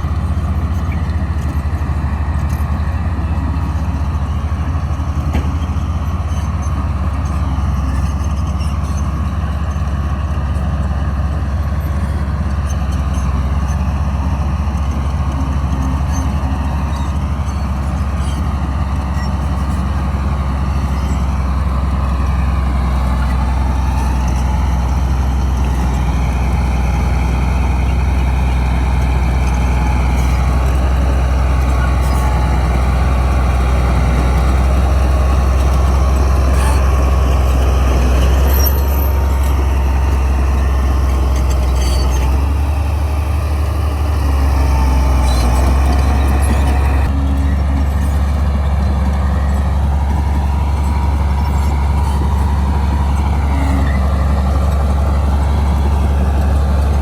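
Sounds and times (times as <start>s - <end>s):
bulldozer diesel engine drone: 0.0s - 57.0s.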